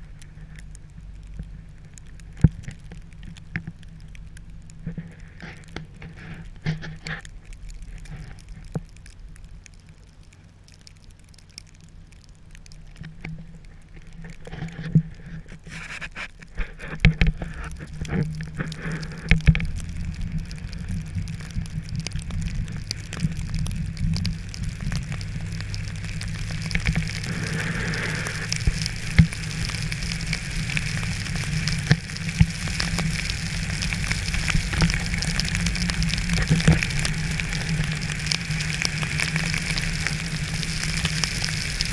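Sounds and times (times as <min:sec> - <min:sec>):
rain pattering on surfaces: 0:00.0 - 0:41.9.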